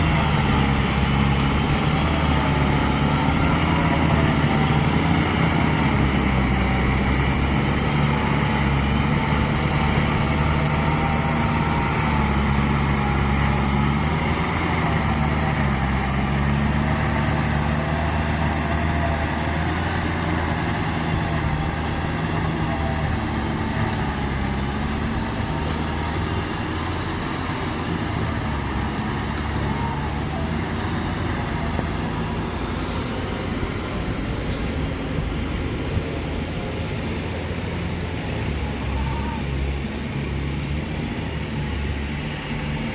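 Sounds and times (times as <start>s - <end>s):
plowing machine engine running: 0.0s - 42.9s.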